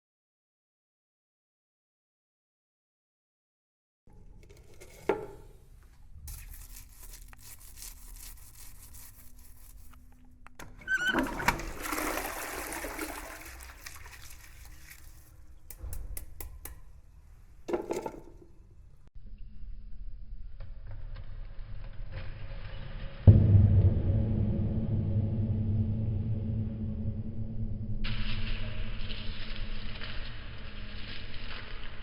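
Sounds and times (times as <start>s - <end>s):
water running and rushing: 11.3s - 15.4s.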